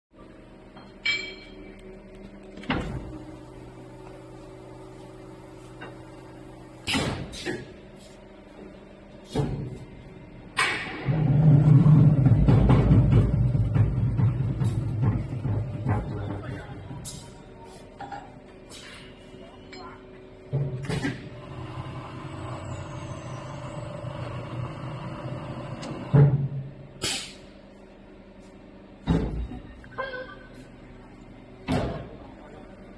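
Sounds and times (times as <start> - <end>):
machine humming: 19.4 - 26.2.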